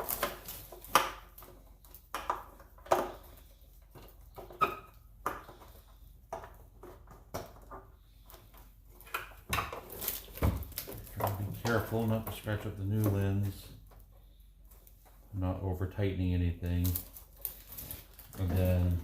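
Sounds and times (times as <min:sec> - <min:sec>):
sharp plastic clicks and knocks: 0:00.0 - 0:13.3.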